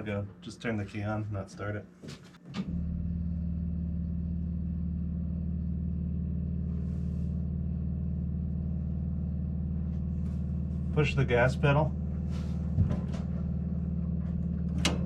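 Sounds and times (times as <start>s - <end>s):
car low hum: 2.4s - 15.0s.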